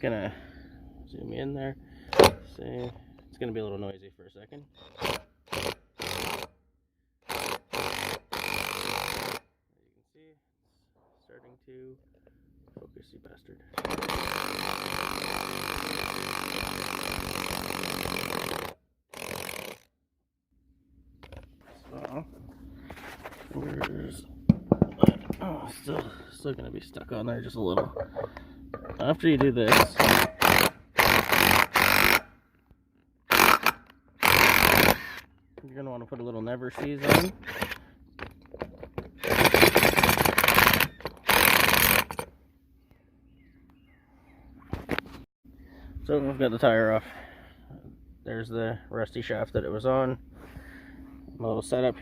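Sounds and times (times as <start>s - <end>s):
impact wrench hammering: 29.7s - 32.2s.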